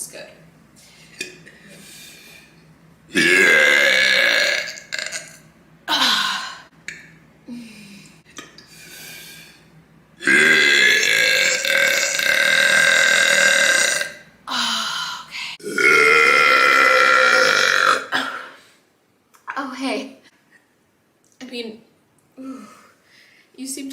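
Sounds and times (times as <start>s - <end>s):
woman burping: 3.1s - 6.6s, 10.2s - 14.6s, 15.6s - 18.6s.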